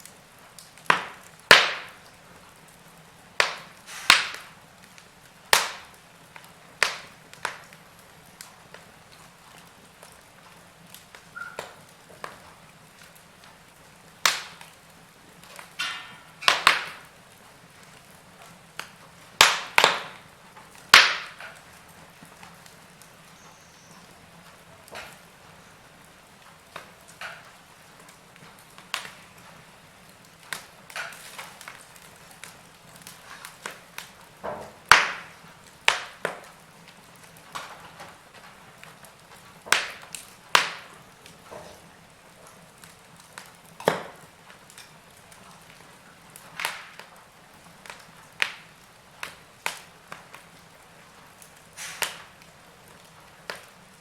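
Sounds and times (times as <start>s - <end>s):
fire crackling with pops: 0.0s - 54.0s.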